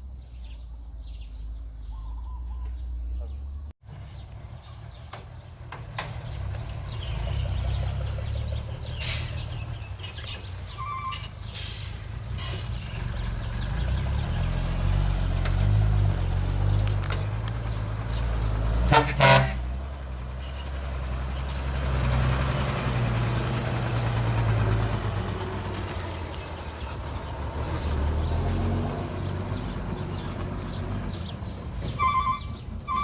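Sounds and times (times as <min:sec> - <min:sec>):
diesel machinery rumbling: 0:01.4 - 0:33.0
truck horn toot: 0:10.7 - 0:11.3, 0:18.8 - 0:20.6, 0:31.9 - 0:33.0.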